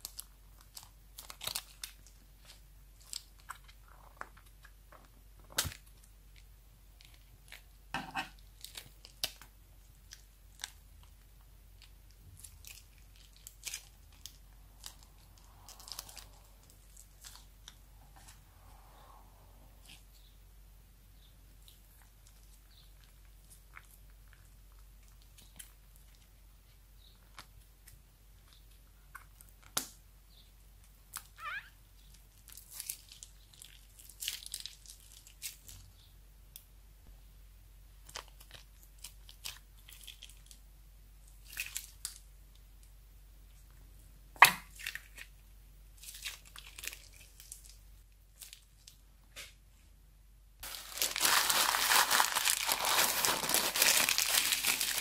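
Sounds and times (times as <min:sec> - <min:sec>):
continuous crinkling: 0:00.0 - 0:07.8, 0:08.4 - 0:18.4, 0:32.0 - 0:36.0, 0:38.0 - 0:40.6, 0:44.7 - 0:49.0, 0:50.6 - 0:55.0
crunchy slime crackling by hand: 0:00.0 - 0:19.2, 0:30.9 - 0:36.0, 0:38.0 - 0:42.3, 0:44.6 - 0:49.0, 0:50.6 - 0:55.0.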